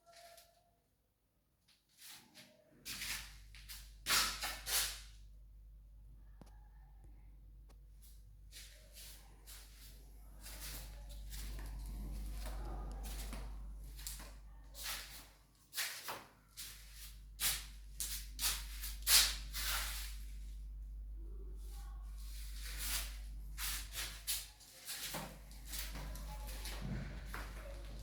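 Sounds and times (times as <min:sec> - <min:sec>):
steady low hum: 0:05.2 - 0:14.8, 0:16.6 - 0:24.4, 0:25.2 - 0:28.0
rustling handling noises: 0:21.6 - 0:28.0.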